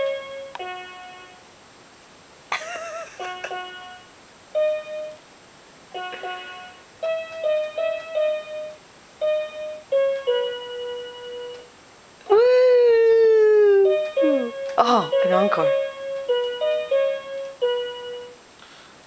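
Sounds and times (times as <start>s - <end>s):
keyboard notes and chords: 0.0s - 1.4s, 3.1s - 5.2s, 5.9s - 11.7s, 13.5s - 18.4s.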